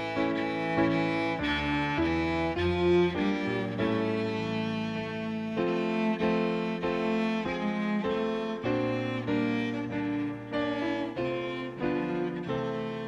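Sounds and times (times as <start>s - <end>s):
violin-like melody: 0.0s - 13.0s.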